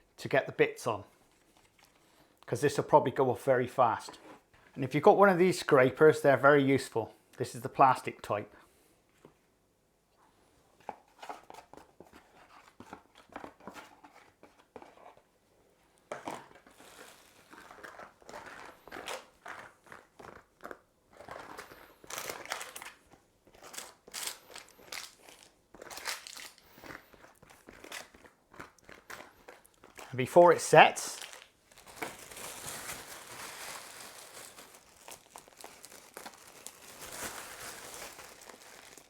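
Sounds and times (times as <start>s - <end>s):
crinkling: 1.2s - 2.5s, 16.0s - 39.0s.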